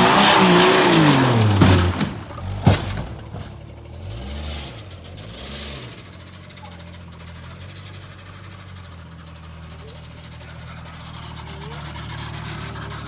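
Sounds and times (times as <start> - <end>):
sharp bang of vehicle landing: 0.0 - 3.9
car engine revving and idling: 0.0 - 13.0.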